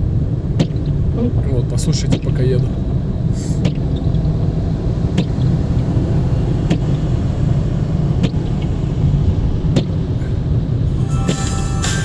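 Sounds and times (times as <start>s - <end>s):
car road noise rumble: 0.0s - 12.0s
windshield wipers stroking: 3.5s - 10.2s.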